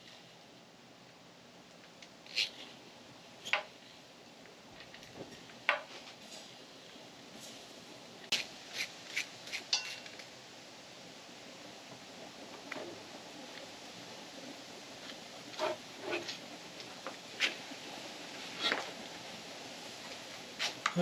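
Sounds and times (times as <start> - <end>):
tools clinking on metal: 9.7 - 10.2.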